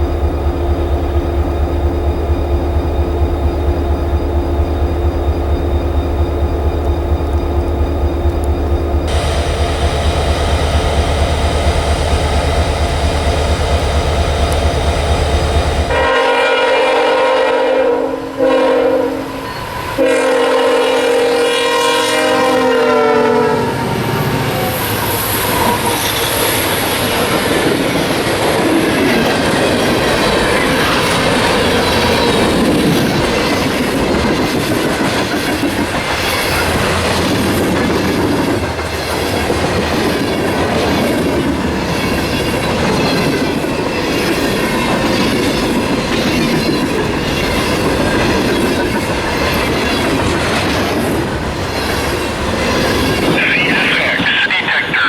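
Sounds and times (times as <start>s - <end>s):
wheels clacking on rail joints: 0.0s - 16.1s, 24.5s - 53.8s
train rumbling past: 0.0s - 55.0s
locomotive air horn blasts: 15.9s - 19.4s, 20.0s - 24.0s.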